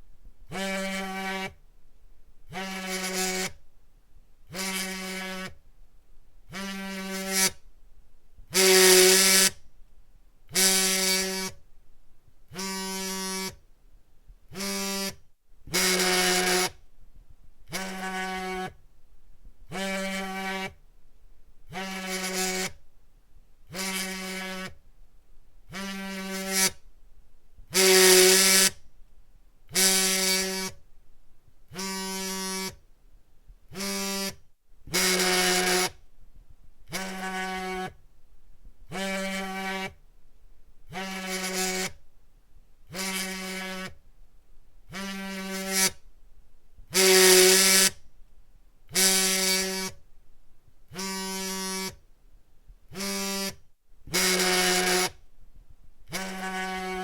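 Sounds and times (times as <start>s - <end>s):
cell phone vibrating buzz: 0.5s - 1.6s, 2.4s - 3.6s, 4.5s - 5.6s, 6.4s - 7.6s, 8.4s - 9.7s, 10.5s - 11.6s, 12.5s - 13.6s, 14.5s - 16.8s, 17.6s - 18.8s, 19.6s - 20.8s, 21.6s - 22.9s, 23.7s - 24.8s, 25.6s - 26.8s, 27.6s - 28.9s, 29.7s - 30.8s, 31.7s - 32.8s, 33.7s - 36.1s, 36.8s - 38.0s, 38.8s - 40.0s, 40.8s - 42.1s, 42.9s - 44.0s, 44.8s - 46.1s, 46.9s - 48.1s, 48.9s - 50.0s, 50.9s - 52.0s, 52.9s - 55.2s, 56.0s - 57.0s.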